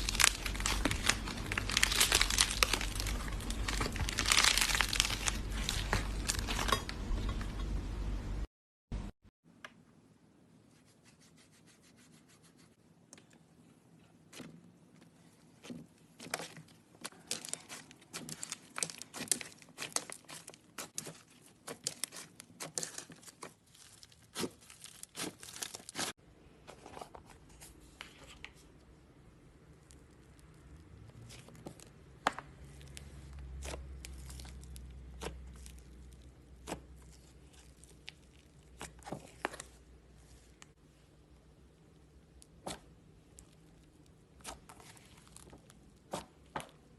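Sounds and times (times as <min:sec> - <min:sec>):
crunchy slime crackling and popping: 0:00.0 - 0:06.8, 0:15.6 - 0:26.2, 0:29.7 - 0:40.7, 0:41.8 - 0:46.9.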